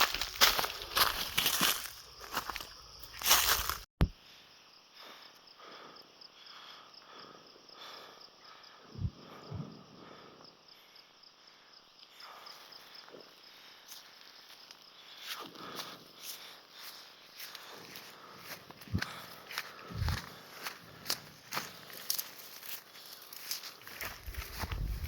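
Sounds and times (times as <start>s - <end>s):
crickets chirping: 0.0s - 25.0s
soft low thumps: 19.9s - 20.3s, 24.2s - 25.0s.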